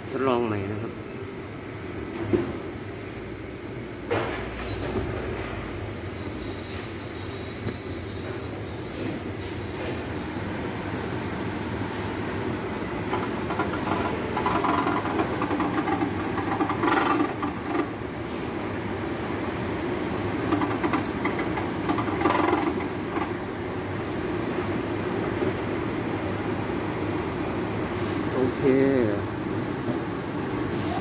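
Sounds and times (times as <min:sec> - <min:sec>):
air conditioner humming: 0:00.0 - 0:31.0
uneven grating noise: 0:13.1 - 0:17.9.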